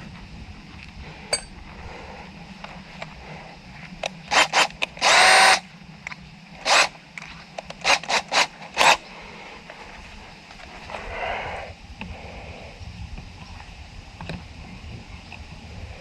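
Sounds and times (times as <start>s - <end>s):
power drill boring into pipe: 4.3s - 5.6s, 6.6s - 6.9s, 7.8s - 9.0s.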